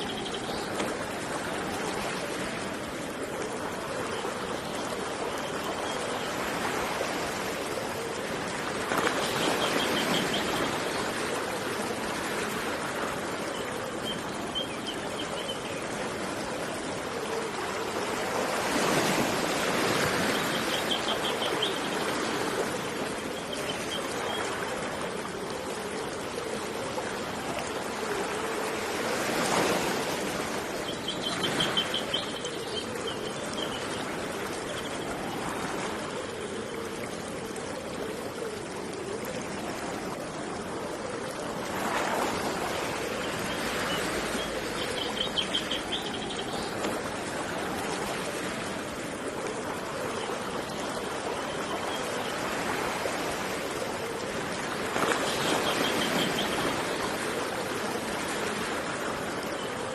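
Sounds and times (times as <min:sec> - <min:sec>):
running water rushing: 0:00.0 - 0:59.9.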